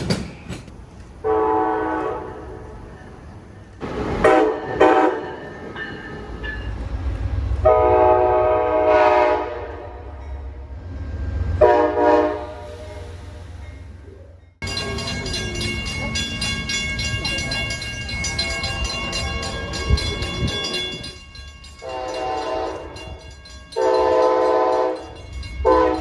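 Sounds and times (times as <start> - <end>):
low rumble of passing train: 0.0 - 26.0
locomotive air horn blowing: 1.2 - 2.7, 4.2 - 5.2, 7.6 - 10.2, 11.6 - 13.1, 21.8 - 23.0, 23.8 - 25.0, 25.7 - 26.0.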